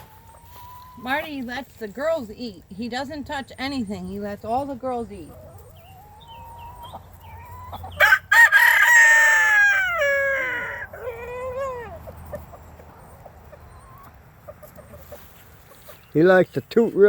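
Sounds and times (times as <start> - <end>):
rooster crowing: 8.0 - 11.9.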